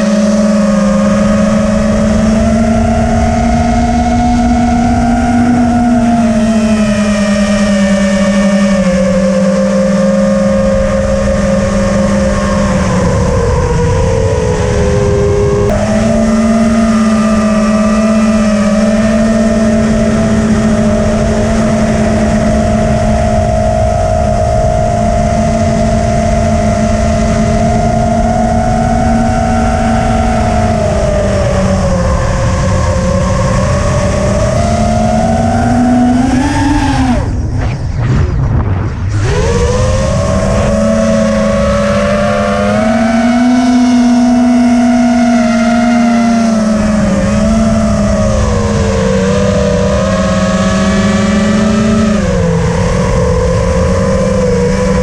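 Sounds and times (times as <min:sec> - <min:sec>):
quadcopter motors whining: 0:00.0 - 0:55.0
wind rushing: 0:29.5 - 0:43.5.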